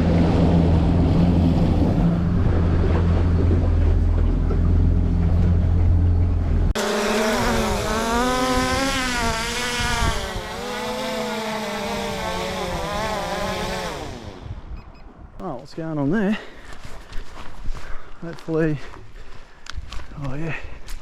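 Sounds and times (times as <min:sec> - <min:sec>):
outboard engine running: 0:00.0 - 0:14.5
drone propellers whining: 0:00.0 - 0:15.2.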